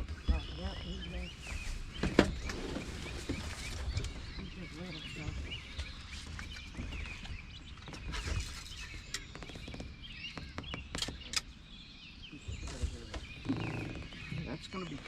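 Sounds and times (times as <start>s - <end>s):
birds chirping: 0.0s - 15.0s
sharp clicks: 10.5s - 11.6s.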